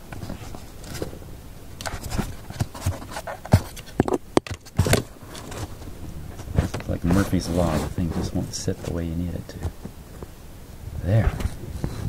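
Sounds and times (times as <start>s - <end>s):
rustling and scraping handling: 0.0s - 10.4s, 11.0s - 12.0s
sharp clicks and knocks: 1.8s - 5.7s.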